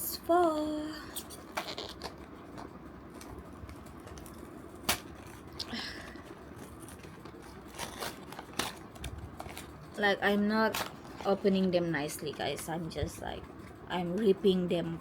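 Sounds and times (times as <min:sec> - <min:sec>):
crinkling rustle: 0:01.4 - 0:10.0.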